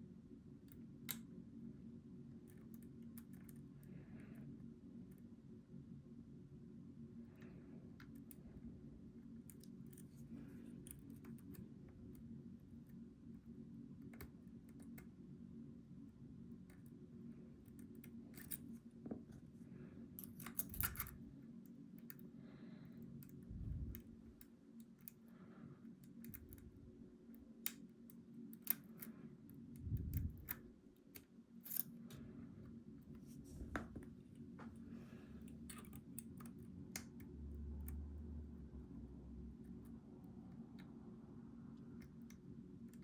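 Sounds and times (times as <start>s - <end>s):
lock picks clicking and scraping: 9.4s - 12.0s, 17.6s - 18.8s, 20.2s - 22.3s, 25.9s - 26.8s, 27.4s - 32.2s, 35.4s - 38.0s.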